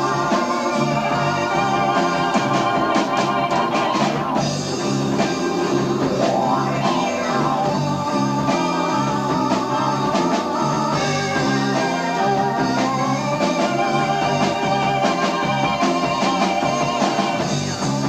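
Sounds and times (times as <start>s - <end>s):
bass line: 0.0s - 18.0s
electric guitar: 0.0s - 18.0s
keyboards: 0.0s - 18.0s
live rock band playing: 0.0s - 18.0s.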